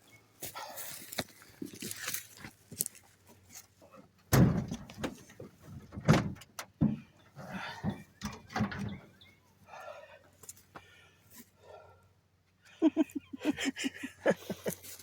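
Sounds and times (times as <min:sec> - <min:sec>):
firewood landing with thuds: 0:04.3 - 0:09.0.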